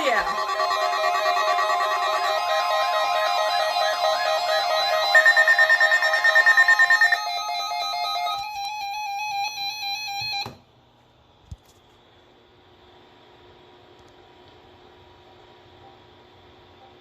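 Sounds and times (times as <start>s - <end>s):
bright synthesized melody: 0.0s - 10.0s.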